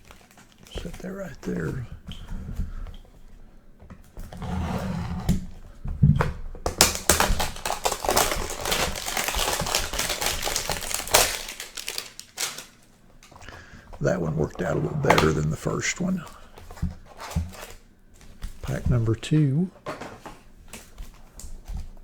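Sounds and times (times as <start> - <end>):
cellophane crackling: 0.0 - 3.4, 6.5 - 19.1.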